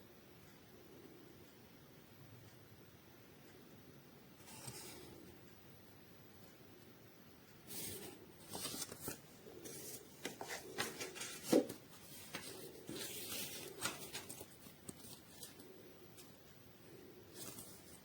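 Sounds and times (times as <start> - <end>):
rustling and handling noises: 4.4 - 5.4, 7.6 - 18.0.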